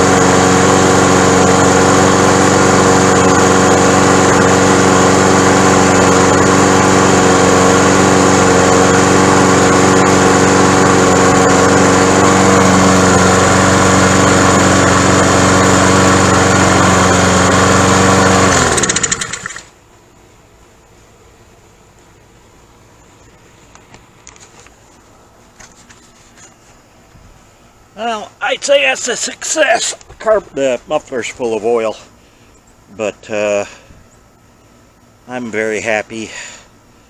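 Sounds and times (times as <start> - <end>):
engine running down to a stop: 0.0 - 19.7
lawn mower engine running: 0.0 - 19.8.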